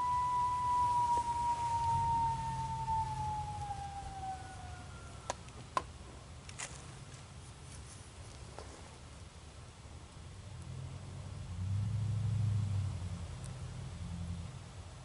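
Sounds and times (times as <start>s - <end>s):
electronic coyote howl call: 0.0s - 5.5s.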